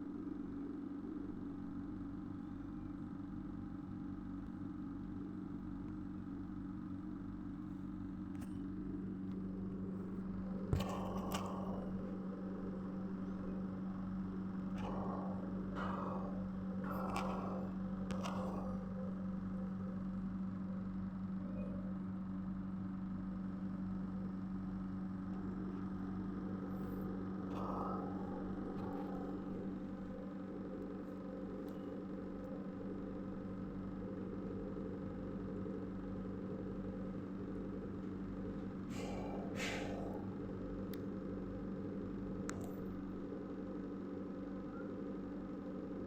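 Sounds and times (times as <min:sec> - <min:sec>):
steady hum: 0:00.0 - 0:46.0
machine humming: 0:09.3 - 0:21.0.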